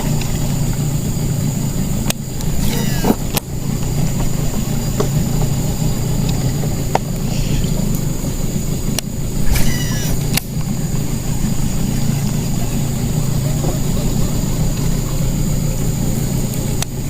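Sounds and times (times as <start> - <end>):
boat motor running: 0.0 - 17.0
falling high chirp: 9.5 - 10.2.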